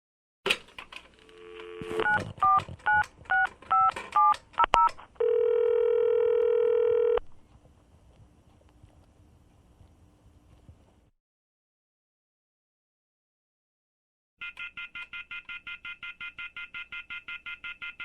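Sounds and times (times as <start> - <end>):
dial tone: 1.3 - 3.9, 5.2 - 7.2
touch-tone keypad beeps: 2.0 - 7.2, 14.4 - 18.0.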